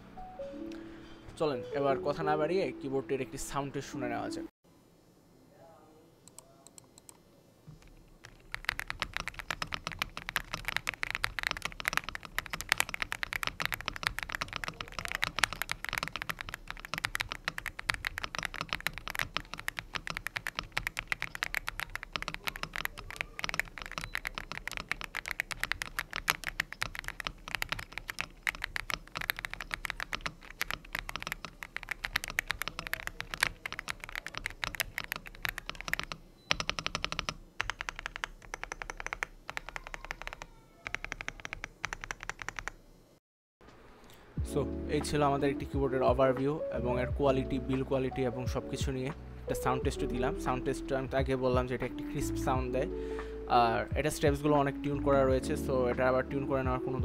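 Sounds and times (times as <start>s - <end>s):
mechanical keyboard typing: 7.8s - 42.8s.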